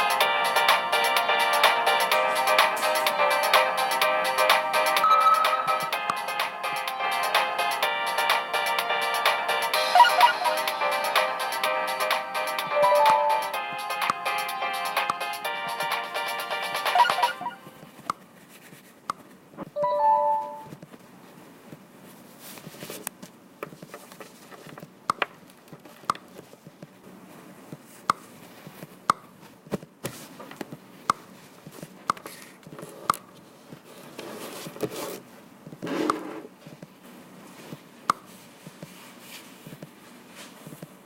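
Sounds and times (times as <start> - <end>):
two-note chime: 5.0 - 6.0, 12.8 - 13.5, 19.8 - 20.7.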